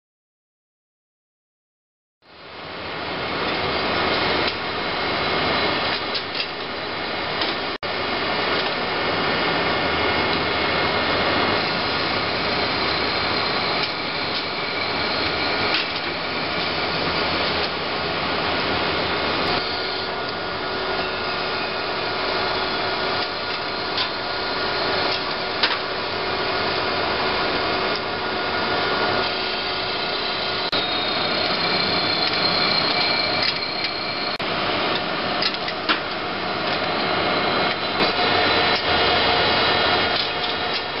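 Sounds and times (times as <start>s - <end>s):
steady high tones: 29.2s - 34.4s.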